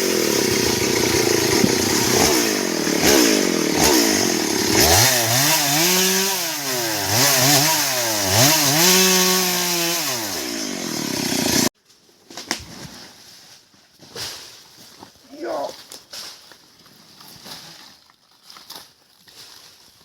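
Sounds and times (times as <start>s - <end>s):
chainsaw cutting wood: 0.0s - 11.7s.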